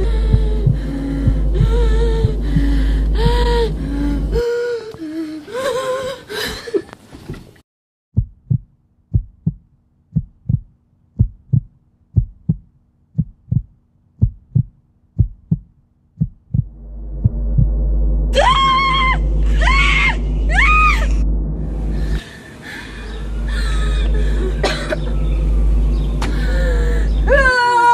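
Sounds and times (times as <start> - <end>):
heartbeat thumps: 0.0 - 4.5, 8.2 - 22.2
faint low hum: 0.0 - 5.3, 16.5 - 27.8
eerie music with gliding tones: 0.0 - 5.7, 16.7 - 27.9.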